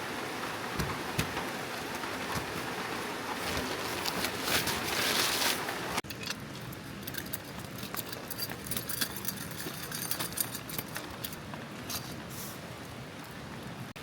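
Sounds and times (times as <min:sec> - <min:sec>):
rushing water: 0:00.0 - 0:06.7
steady rain hiss: 0:00.0 - 0:07.0, 0:09.9 - 0:14.0
small ticks and clinks: 0:06.0 - 0:12.2.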